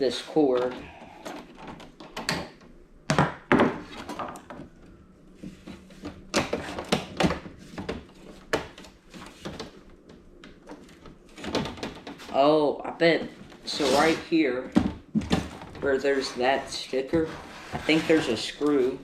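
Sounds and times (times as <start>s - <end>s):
plastic casing knocks and clatter: 6.0s - 12.3s, 14.7s - 15.8s.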